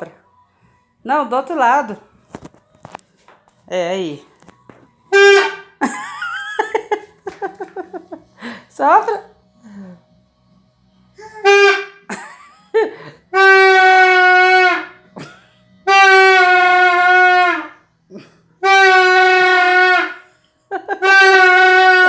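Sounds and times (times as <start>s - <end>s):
toy horn blasts: 5.1s - 5.8s, 11.3s - 12.1s, 13.3s - 15.1s, 15.8s - 17.9s, 18.6s - 20.3s, 20.9s - 22.0s.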